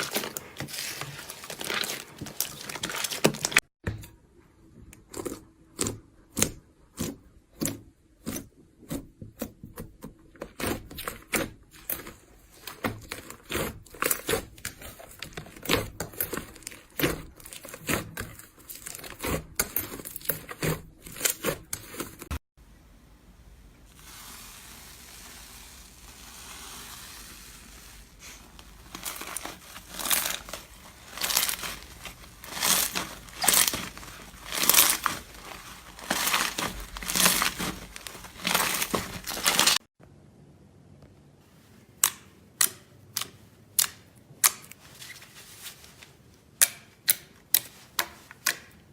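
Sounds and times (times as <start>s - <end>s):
soft slime handling: 23.5s - 39.8s, 44.7s - 46.6s
slime crackling and popping: 23.9s - 39.8s.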